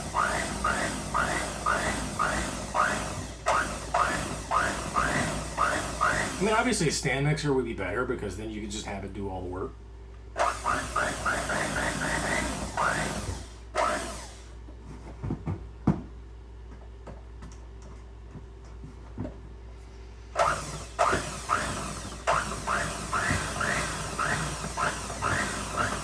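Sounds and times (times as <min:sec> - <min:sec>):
electric hand mixer beating frosting: 0:00.0 - 0:06.8, 0:10.4 - 0:14.4, 0:20.4 - 0:26.0.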